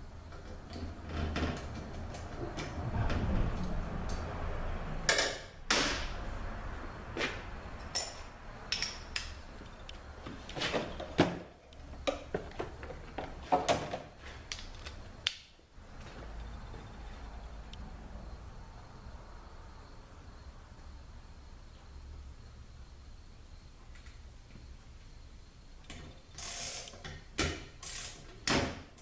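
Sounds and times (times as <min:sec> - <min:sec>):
metal tools clinking on workbench: 0:07.8 - 0:09.1.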